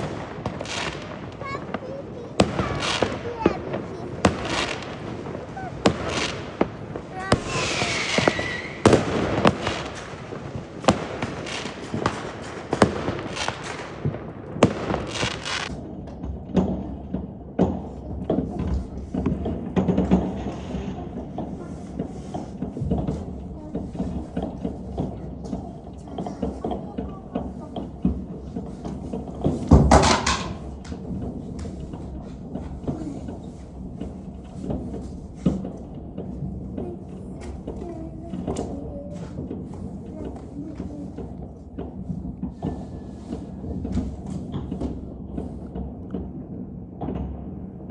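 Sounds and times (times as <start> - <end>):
crackling hiss: 0.0 - 15.8
fireworks and firecrackers banging: 0.0 - 47.9.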